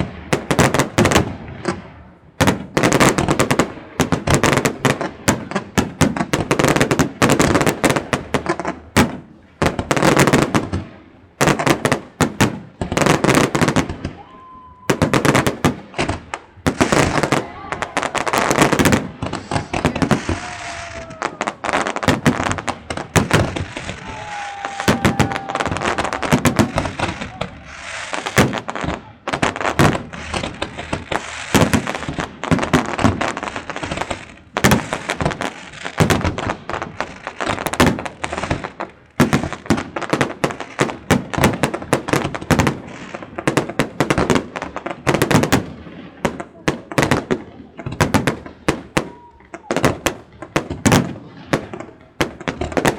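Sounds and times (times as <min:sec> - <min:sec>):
fireworks bangs and crackles: 0:00.0 - 0:52.9
firework whistles: 0:13.8 - 0:15.4, 0:23.3 - 0:28.6.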